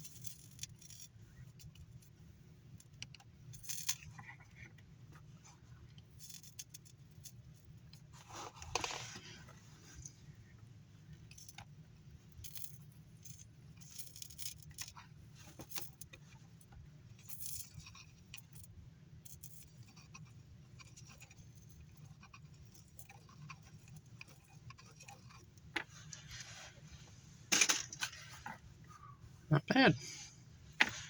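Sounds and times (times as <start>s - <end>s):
small parts and tools clicking: 0.0s - 2.2s, 2.8s - 5.2s, 5.9s - 8.0s, 11.1s - 26.4s, 27.5s - 28.6s
low steady hum: 0.0s - 31.0s.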